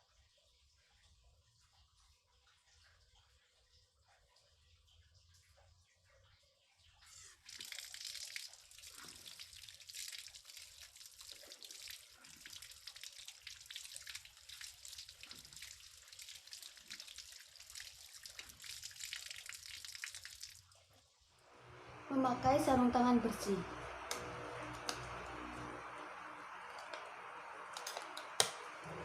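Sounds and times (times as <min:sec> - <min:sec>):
tap water running: 0:07.4 - 0:20.8, 0:21.4 - 0:29.0.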